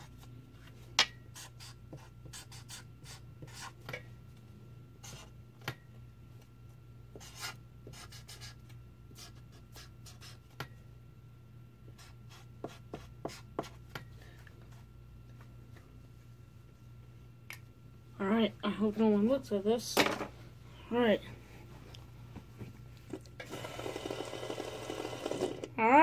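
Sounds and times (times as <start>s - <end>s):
steady low hum: 0.0s - 26.0s
marker scratching on paper: 1.3s - 3.8s, 5.0s - 5.3s, 7.2s - 8.6s, 9.2s - 10.4s, 12.0s - 13.8s.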